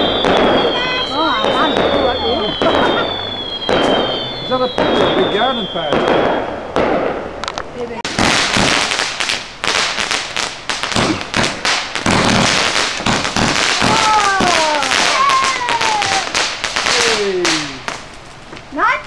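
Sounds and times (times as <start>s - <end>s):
long falling tones: 0.0s - 5.9s
fireworks crackling: 0.0s - 19.0s.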